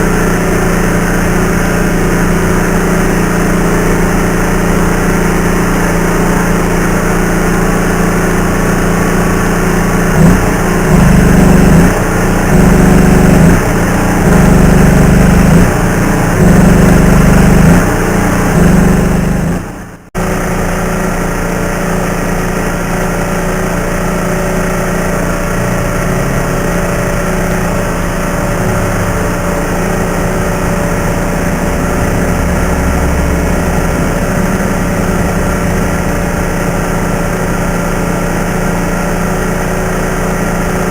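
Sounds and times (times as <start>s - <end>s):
machine drone: 0.0s - 40.9s.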